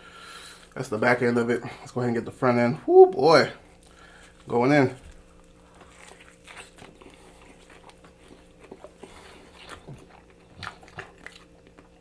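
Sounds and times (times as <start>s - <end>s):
person chewing food: 3.6s - 12.0s.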